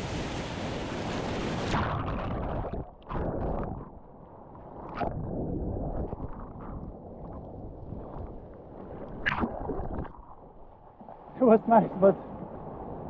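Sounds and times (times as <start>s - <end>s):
sharp water splash: 0.0s - 3.7s, 9.0s - 11.2s
ocean surf rushing and churning: 0.0s - 13.0s.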